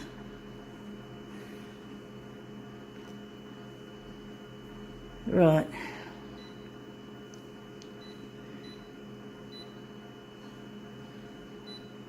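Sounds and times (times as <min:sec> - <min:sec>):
electrical hum: 0:00.0 - 0:12.0.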